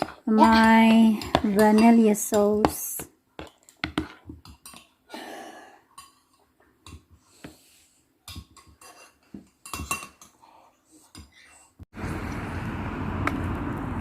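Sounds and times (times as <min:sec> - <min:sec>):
spoon scraping a bowl: 0:08.4 - 0:11.7.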